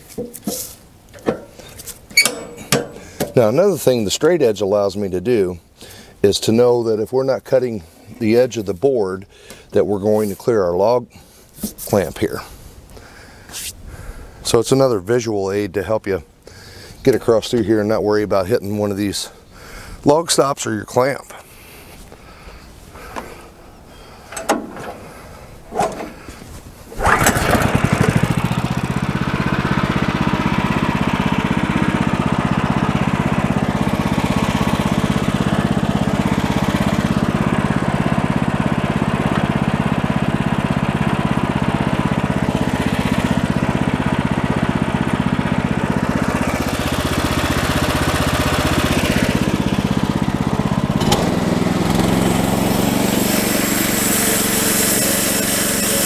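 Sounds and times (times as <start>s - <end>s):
knocks: 0.1s - 1.6s, 2.2s - 3.4s
small gasoline engine running: 1.2s - 3.4s, 27.0s - 56.0s.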